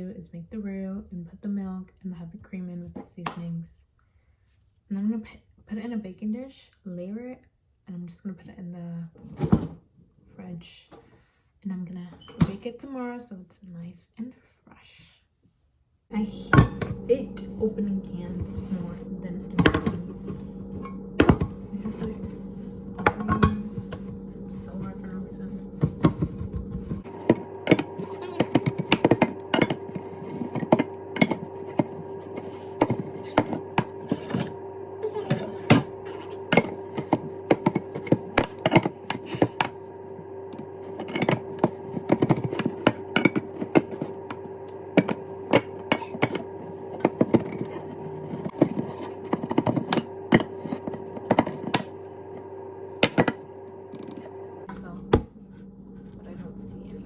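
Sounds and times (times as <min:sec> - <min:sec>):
steady hum: 0:16.1 - 0:57.0.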